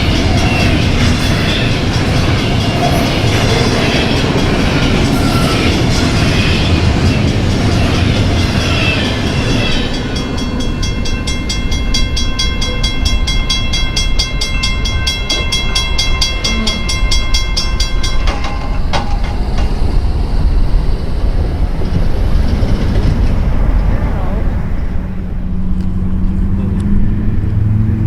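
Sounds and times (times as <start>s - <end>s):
pulsing high ringing: 0.0s - 21.5s
train rumbling past: 0.0s - 28.0s.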